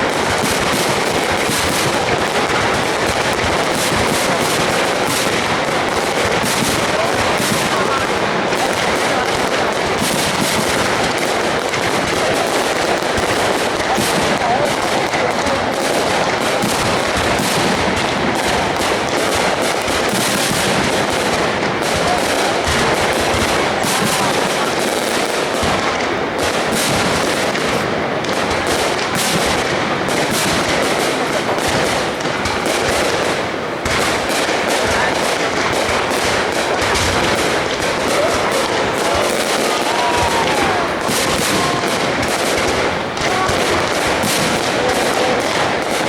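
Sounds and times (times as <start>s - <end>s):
crowd voices: 0.0s - 46.0s
fireworks bangs and crackles: 0.0s - 46.0s.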